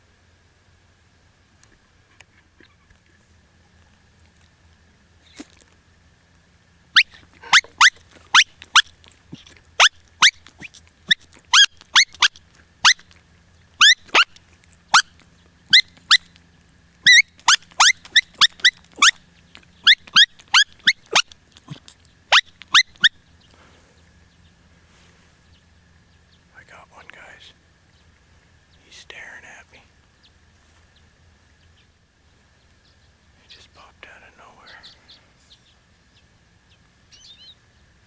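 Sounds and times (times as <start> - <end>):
coyote call yips: 6.9 - 13.2, 13.8 - 16.4, 17.0 - 23.2, 37.1 - 37.6.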